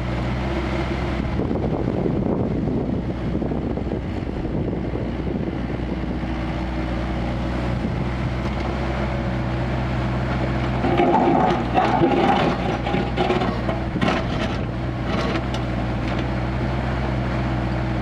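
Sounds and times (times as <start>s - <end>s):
diesel excavator engine running: 0.0s - 18.0s
wind on microphone: 1.2s - 6.3s.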